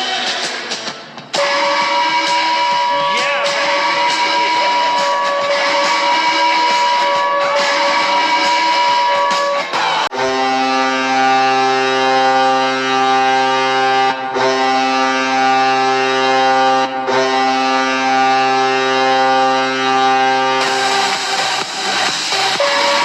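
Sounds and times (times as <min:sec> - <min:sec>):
guitar-driven goal music: 0:00.0 - 0:12.4
hockey goal horn blast: 0:01.3 - 0:23.0.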